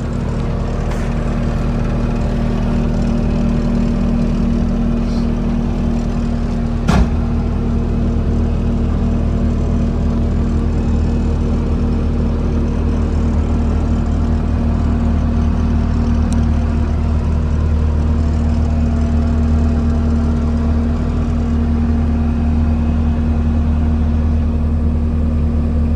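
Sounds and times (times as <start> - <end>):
diesel engine running: 0.0 - 25.9
sharp knock: 6.9 - 7.5.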